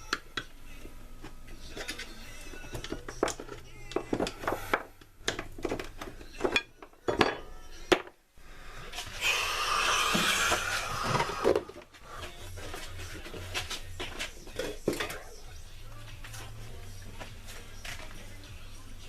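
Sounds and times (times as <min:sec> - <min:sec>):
objects knocking and clinking: 0:01.8 - 0:08.1
steady noise: 0:08.4 - 0:13.1.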